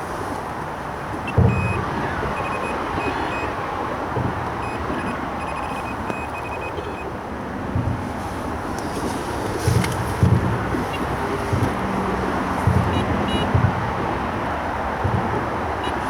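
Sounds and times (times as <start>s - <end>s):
road traffic noise: 0.0s - 16.0s
bite alarm short high beeps: 1.2s - 3.6s, 4.6s - 7.1s, 12.8s - 13.5s.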